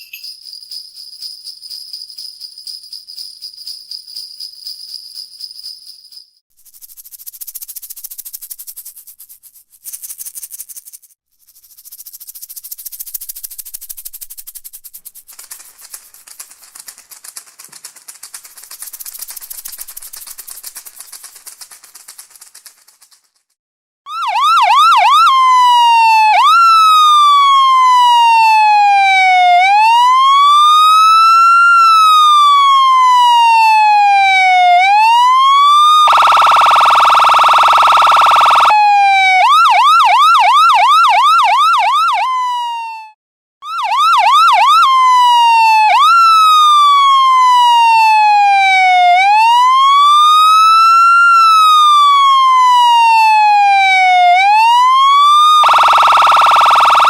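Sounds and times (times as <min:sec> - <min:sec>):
emergency siren yelp and wail: 0:24.1 - 0:57.0.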